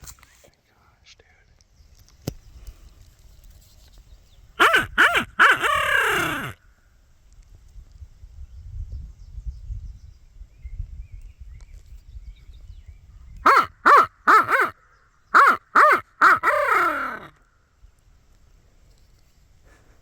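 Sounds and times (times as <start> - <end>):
crow cawing: 4.6 - 6.6, 13.5 - 14.8, 15.4 - 17.4
wind rumble on microphone: 6.1 - 13.5.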